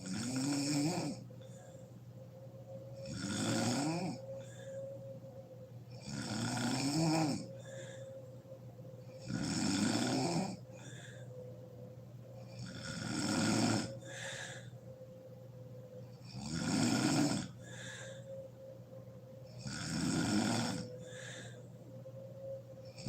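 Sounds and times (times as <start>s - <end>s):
woman snoring loudly: 0.0s - 1.3s, 3.0s - 4.7s, 6.0s - 8.0s, 9.2s - 11.0s, 12.4s - 14.6s, 16.2s - 18.2s, 19.6s - 21.6s
faint breath: 1.0s - 6.3s, 7.3s - 9.4s, 10.0s - 16.6s, 17.3s - 23.0s.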